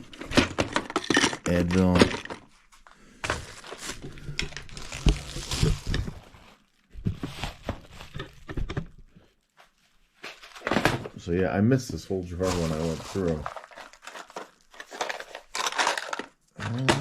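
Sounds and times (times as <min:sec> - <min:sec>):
items rustling and clattering in drawer: 0:00.0 - 0:02.5, 0:03.2 - 0:09.2, 0:10.2 - 0:11.3, 0:11.9 - 0:17.0.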